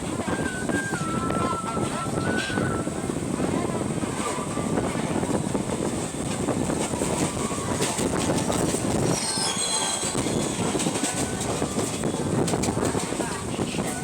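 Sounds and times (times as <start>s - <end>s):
train wheels rumbling on track: 0.0s - 14.0s
high-pitched wheel squeal: 8.5s - 12.4s.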